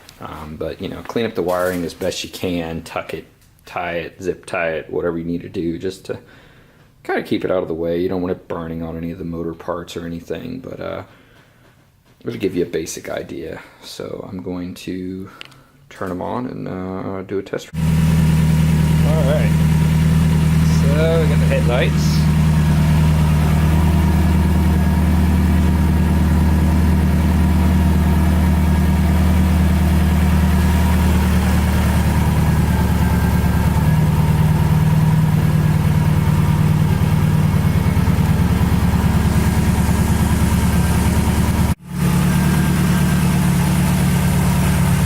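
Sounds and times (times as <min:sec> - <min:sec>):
car engine idling: 0:17.8 - 0:45.0.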